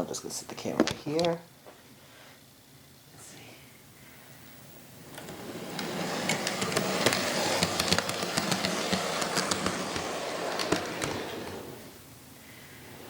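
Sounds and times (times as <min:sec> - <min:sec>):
model train motor whir: 0:05.1 - 0:12.0
wheels clicking on rails: 0:05.1 - 0:12.0.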